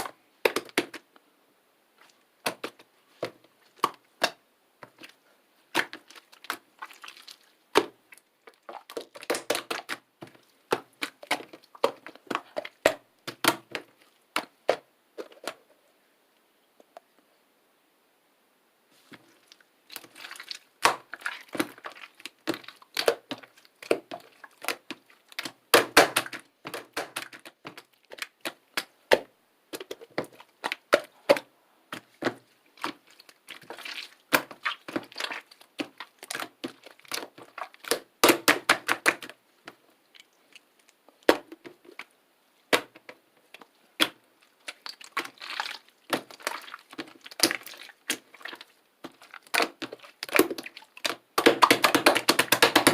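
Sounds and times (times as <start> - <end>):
slime bubbles popping: 19.9 - 29.2, 32.3 - 39.3, 44.0 - 52.9.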